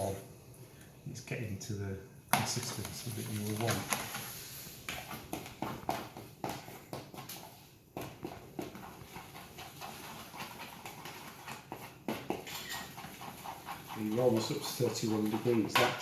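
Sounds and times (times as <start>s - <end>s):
spoon tapping and scraping bowl: 8.0s - 16.0s.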